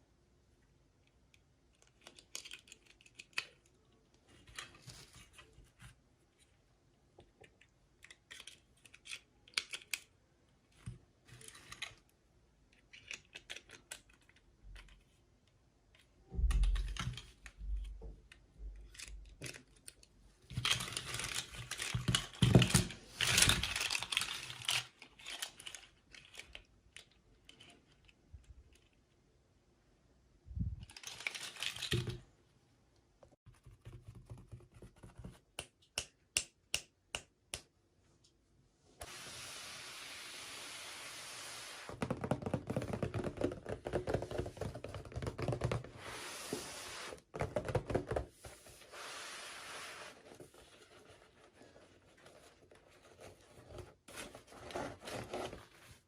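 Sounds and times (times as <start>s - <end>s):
plastic pieces clicking: 1.8s - 3.7s, 7.4s - 10.1s.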